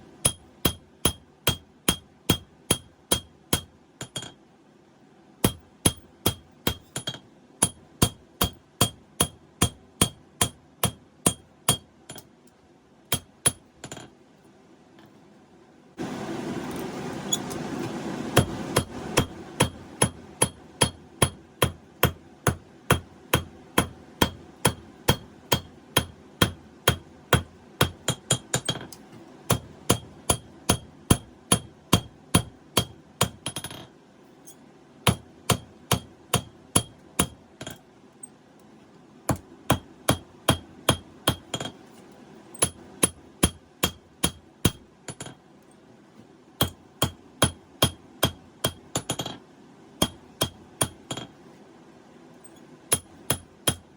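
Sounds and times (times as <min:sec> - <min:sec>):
hammer striking steel on anvil: 0:00.2 - 0:04.4, 0:05.4 - 0:12.3, 0:13.1 - 0:14.1, 0:18.4 - 0:28.9, 0:29.5 - 0:33.8, 0:35.0 - 0:37.8, 0:39.3 - 0:41.8, 0:42.6 - 0:45.4, 0:46.6 - 0:49.4, 0:50.0 - 0:51.3, 0:52.5 - 0:53.9.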